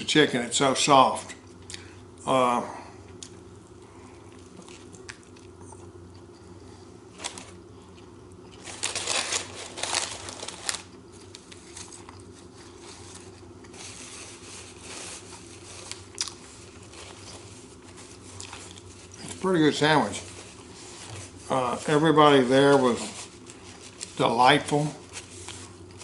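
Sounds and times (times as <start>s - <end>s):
paper wrapper crinkling: 8.6s - 26.0s.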